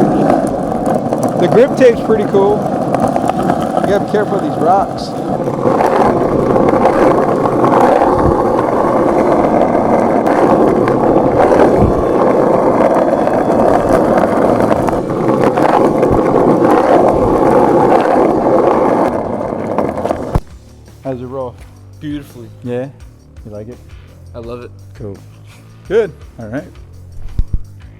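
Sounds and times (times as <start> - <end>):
skateboard wheels rolling on rough ground: 0.0 - 21.5.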